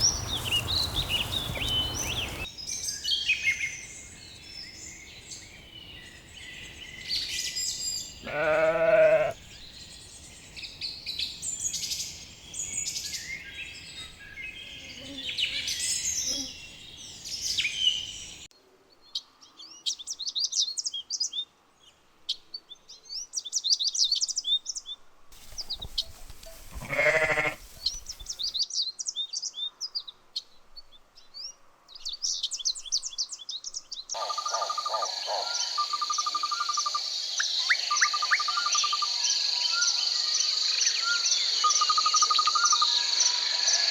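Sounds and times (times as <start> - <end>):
birdsong: 0.0 - 43.9
sheep bleating: 8.2 - 9.4, 26.6 - 27.8.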